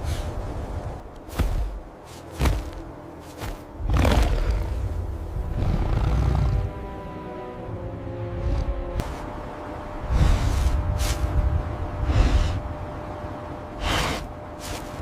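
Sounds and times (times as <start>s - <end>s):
dramatic film score: 0.0s - 15.0s
deep rumble: 3.7s - 15.0s.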